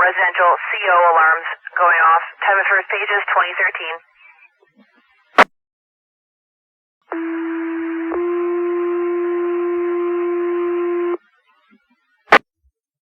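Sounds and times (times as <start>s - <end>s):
radio hiss: 0.0s - 5.5s.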